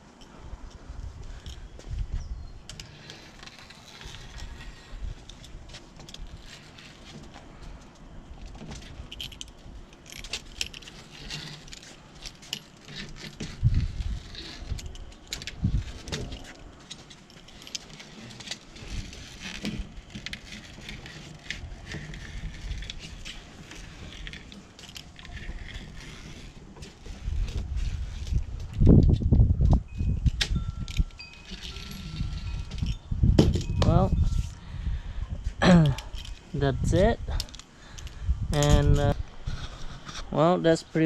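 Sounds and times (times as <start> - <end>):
screen mesh crinkling: 2.7 - 29.2
spline roller clicking and rattling: 10.0 - 28.9.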